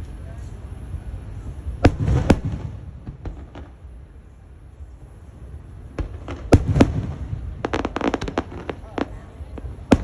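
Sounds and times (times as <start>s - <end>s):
fireworks bangs and pops: 1.7s - 3.9s, 5.9s - 10.0s.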